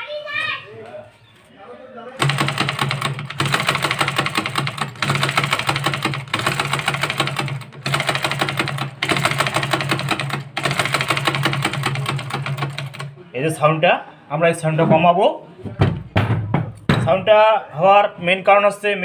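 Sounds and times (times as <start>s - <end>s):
sewing machine clattering: 2.2s - 13.1s.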